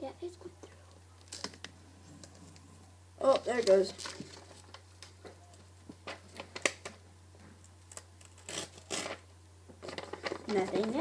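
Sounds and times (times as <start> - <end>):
paper rustling and crinkling: 3.2 - 7.0, 9.8 - 11.0.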